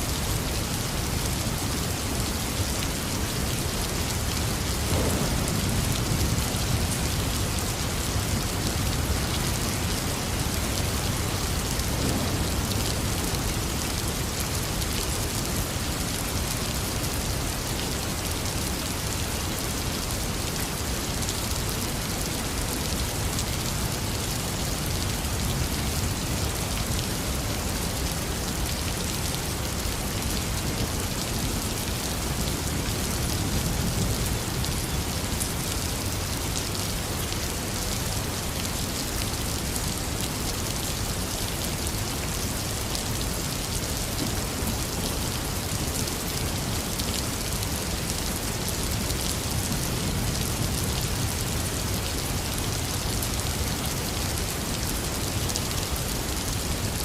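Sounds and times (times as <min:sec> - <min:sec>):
heavy rain: 0:00.0 - 0:57.0
low thunder rumble: 0:04.5 - 0:09.2, 0:11.1 - 0:13.8.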